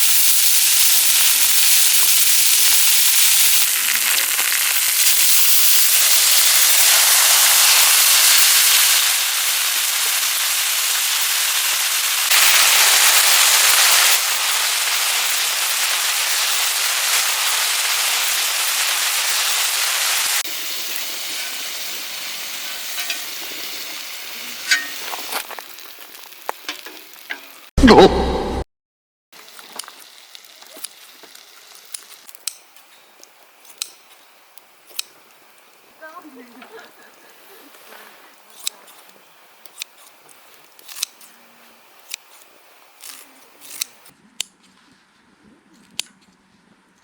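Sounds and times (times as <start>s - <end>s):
food sizzling in a pan: 0.0s - 27.7s, 29.4s - 44.1s
sharp pops: 11.2s - 21.9s.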